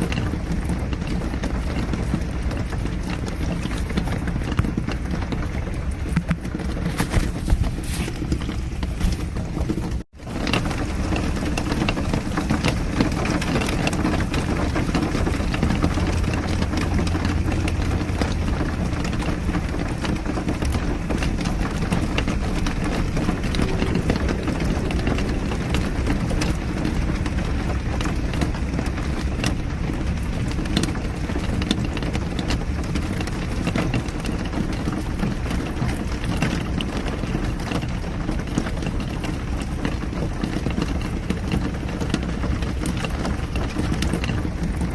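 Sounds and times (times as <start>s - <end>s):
car engine and road rumble: 0.0s - 44.9s
raindrops ticking: 0.0s - 44.9s
rain hissing: 0.6s - 33.6s.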